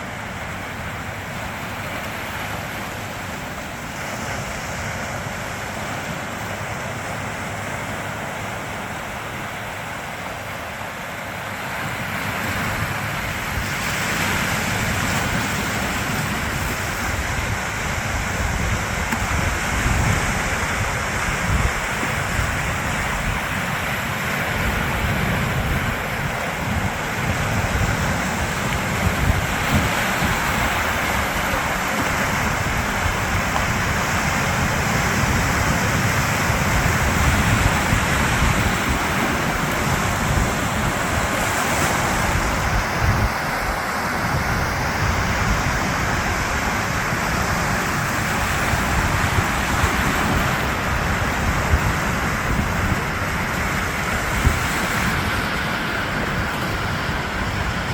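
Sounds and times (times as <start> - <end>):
sea waves washing: 0.0 - 57.9
wind buffeting microphone: 12.2 - 57.9.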